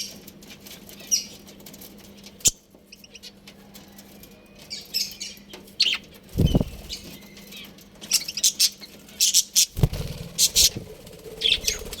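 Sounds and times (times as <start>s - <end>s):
budgerigars chirping: 5.0s - 7.2s, 10.3s - 12.0s.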